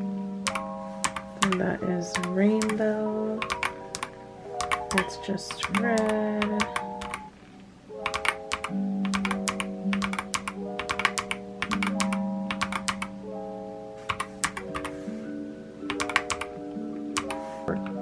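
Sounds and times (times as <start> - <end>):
soft chord music: 0.0 - 18.0
mechanical keyboard clicks: 2.2 - 2.8, 3.4 - 7.3, 8.0 - 13.1, 14.1 - 14.9, 15.9 - 16.5.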